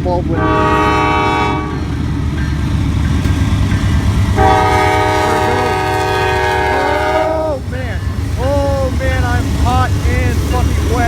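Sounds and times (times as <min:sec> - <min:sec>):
freight train rumbling past: 0:00.0 - 0:11.0
locomotive air horn: 0:00.4 - 0:01.9, 0:04.4 - 0:07.6.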